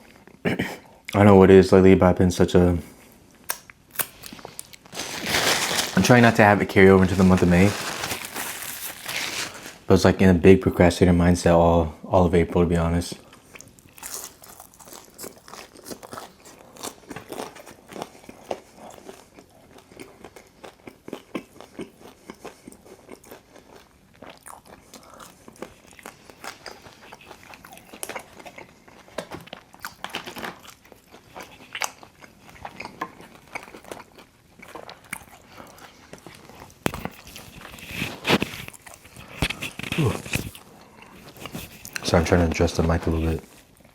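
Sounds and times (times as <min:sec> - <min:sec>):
crunchy pizza crust being chewed: 0:13.2 - 0:42.2.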